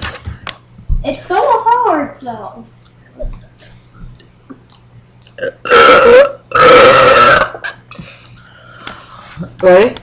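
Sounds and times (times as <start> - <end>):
loud burps: 5.4 - 7.8.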